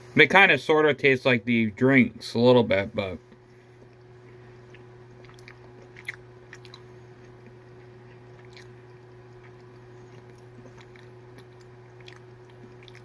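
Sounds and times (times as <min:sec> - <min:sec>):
steady low hum: 0:00.0 - 0:13.0
person chewing gummy snacks: 0:03.8 - 0:13.0
wet mouth clicks: 0:04.8 - 0:13.0.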